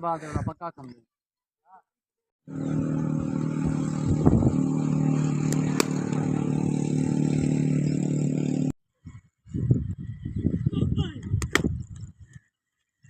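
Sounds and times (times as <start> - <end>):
motor droning: 2.5 - 8.8.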